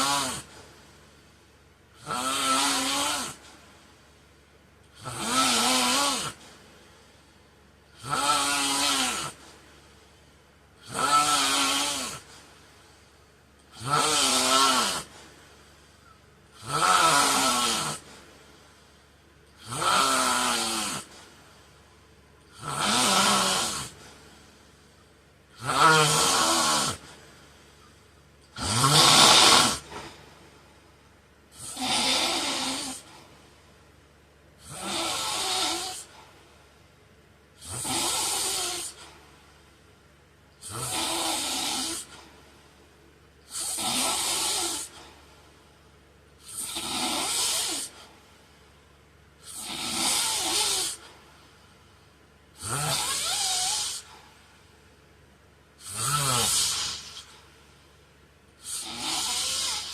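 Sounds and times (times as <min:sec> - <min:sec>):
man snoring: 0:00.0 - 0:00.6, 0:02.0 - 0:03.6, 0:04.9 - 0:06.5, 0:07.9 - 0:09.5, 0:10.8 - 0:13.0, 0:13.6 - 0:15.3, 0:16.5 - 0:18.2, 0:19.5 - 0:21.8, 0:22.4 - 0:24.4, 0:25.5 - 0:27.2, 0:28.4 - 0:30.3, 0:31.5 - 0:33.4, 0:34.6 - 0:36.5, 0:37.6 - 0:39.2, 0:40.6 - 0:42.3, 0:43.5 - 0:45.3, 0:46.4 - 0:48.3, 0:49.4 - 0:51.3, 0:52.5 - 0:54.2, 0:55.8 - 0:57.5, 0:58.6 - 0:59.9.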